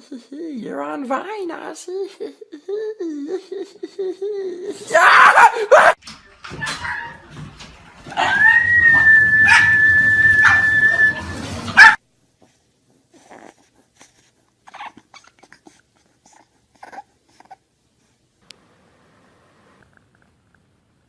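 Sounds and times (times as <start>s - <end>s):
dog barking: 5.2s - 6.0s, 11.8s - 12.0s
dog whining: 8.1s - 12.0s, 14.7s - 17.6s.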